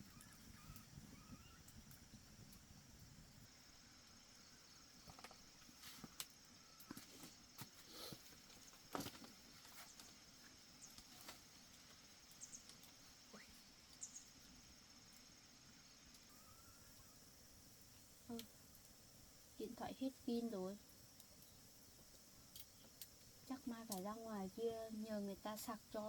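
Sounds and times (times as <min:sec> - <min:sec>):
crickets chirring: 0:00.0 - 0:26.0
small clicks and knocks: 0:05.0 - 0:05.4.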